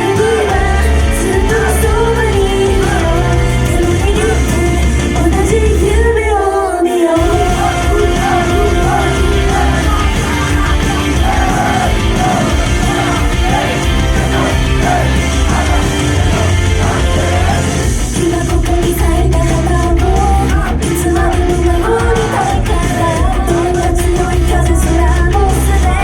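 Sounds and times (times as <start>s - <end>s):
live rock-pop band: 0.0s - 6.4s, 7.1s - 26.0s
high singing: 7.1s - 23.8s.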